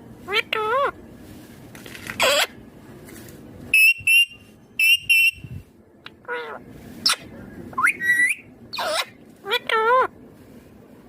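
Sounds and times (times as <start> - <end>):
parakeet calling: 2.2 - 2.6, 6.1 - 10.2
shrill clipped squawks: 7.0 - 9.2.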